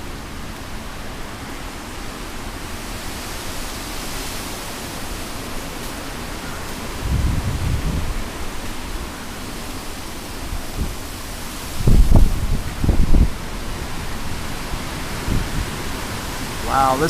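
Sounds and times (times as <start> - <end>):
strong wind rushing through trees: 0.0 - 17.0.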